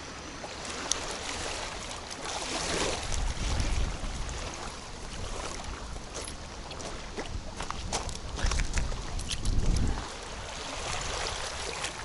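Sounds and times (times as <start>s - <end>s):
gusty wind buffeting microphone: 2.8s - 11.6s.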